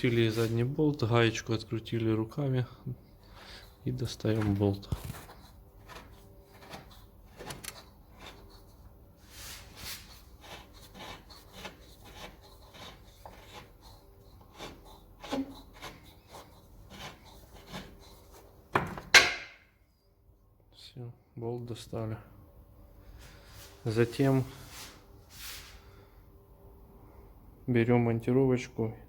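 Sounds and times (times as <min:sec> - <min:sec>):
metal scraping and rubbing: 0:03.3 - 0:18.6.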